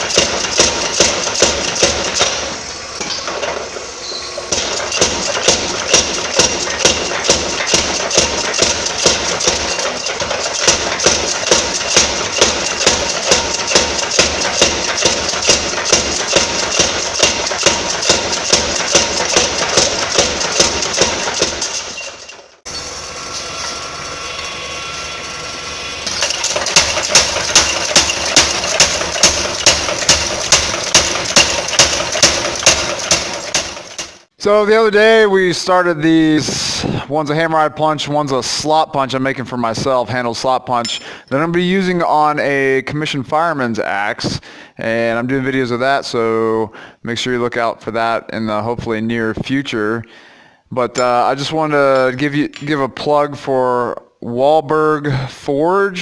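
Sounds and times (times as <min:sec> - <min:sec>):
rushing forge noise: 0:00.0 - 0:34.4.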